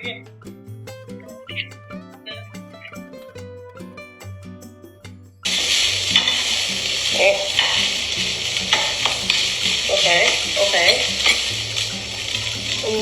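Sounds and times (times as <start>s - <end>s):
fried rice sizzling in a pan: 5.5s - 13.0s.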